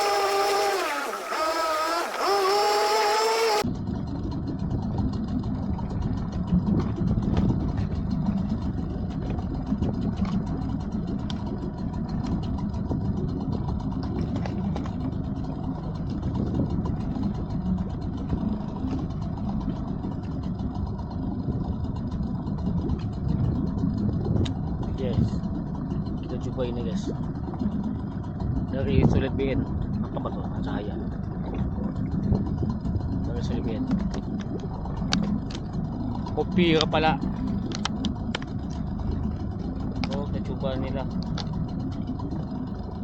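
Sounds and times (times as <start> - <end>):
wavering pitched tones: 0.0 - 3.6
outboard motor rumbling: 0.0 - 43.0.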